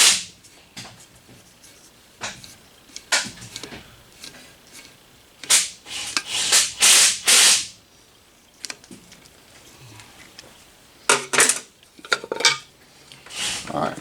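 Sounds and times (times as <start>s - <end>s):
metal scraping strokes: 13.3s - 13.8s.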